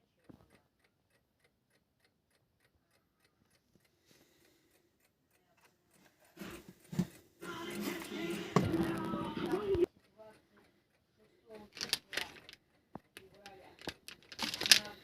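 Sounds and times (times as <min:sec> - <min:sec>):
radio broadcast: 0:07.5 - 0:09.9.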